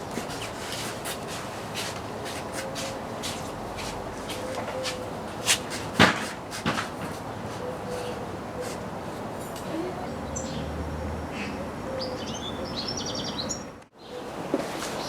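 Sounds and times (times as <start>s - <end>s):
birds chirping: 9.7s - 14.3s.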